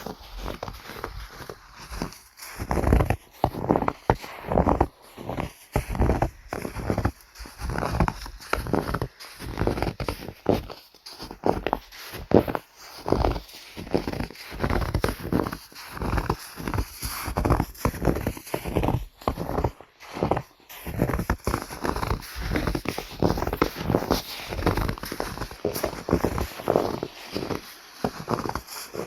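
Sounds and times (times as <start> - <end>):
footsteps crunching in snow: 0.0 - 29.0.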